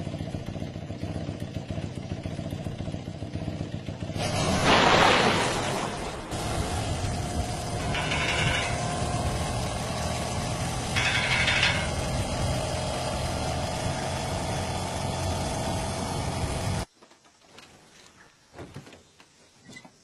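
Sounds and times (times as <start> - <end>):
motorcycle engine idling: 0.0 - 4.2, 6.4 - 16.9
high-pitched hiss or rattle: 4.3 - 12.4.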